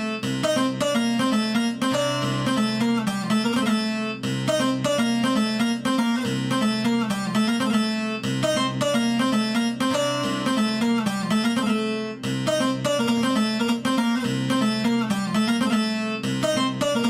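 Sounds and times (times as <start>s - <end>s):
plucked string melody: 0.0s - 17.0s.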